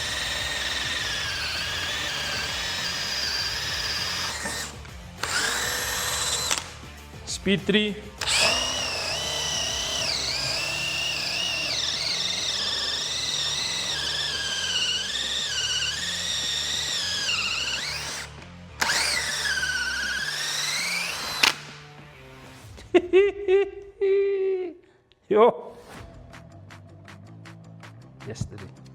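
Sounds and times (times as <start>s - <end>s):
drill boring into wood: 0.0s - 7.2s, 8.2s - 21.9s
background music: 0.0s - 24.7s, 25.3s - 28.9s.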